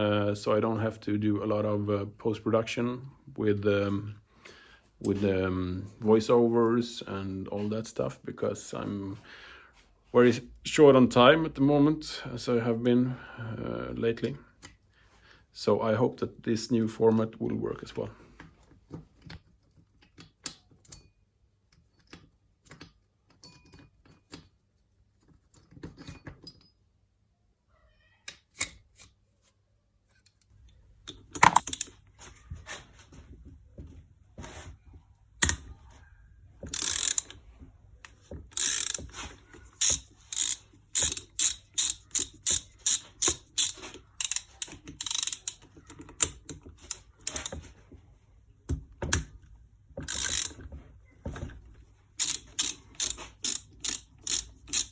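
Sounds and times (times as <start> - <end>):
small tool clicks and handling: 31.1 - 32.0, 36.6 - 37.4, 38.0 - 47.7, 50.0 - 51.5, 52.2 - 54.9
ratchet wrench clicking: 36.7 - 37.4, 38.0 - 45.6, 46.2 - 47.6, 50.1 - 50.6, 52.2 - 54.9.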